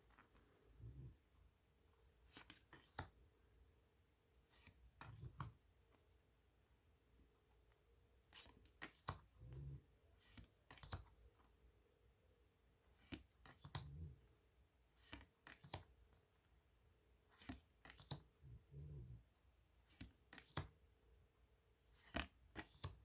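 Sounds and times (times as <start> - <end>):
soft low sounds: 0.0 - 1.4
cards clicking and snapping: 2.3 - 3.1, 8.4 - 9.3, 10.2 - 11.2, 13.0 - 13.9, 15.0 - 15.9, 17.4 - 18.3, 19.9 - 20.7, 22.0 - 23.0.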